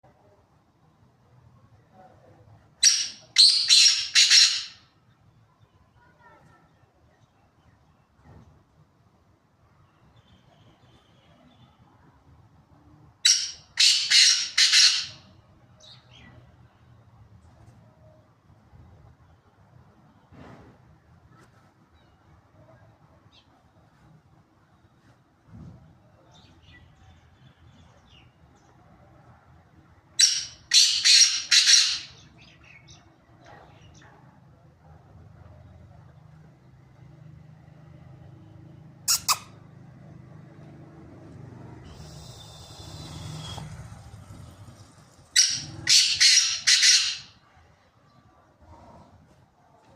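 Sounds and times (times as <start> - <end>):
bird harsh grating calls: 2.8 - 4.9, 13.2 - 15.3, 30.2 - 32.6, 39.1 - 39.6, 41.8 - 43.8, 45.4 - 47.4.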